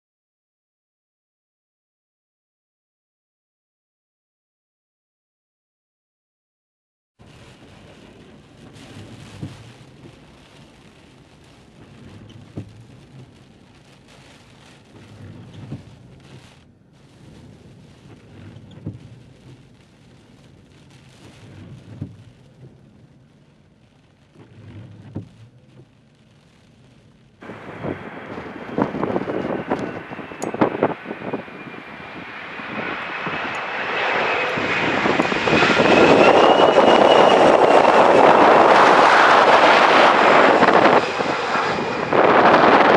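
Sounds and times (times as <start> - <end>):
wind buffeting microphone: 7.3 - 14.0, 27.4 - 42.9
jet aircraft engine: 27.4 - 42.9.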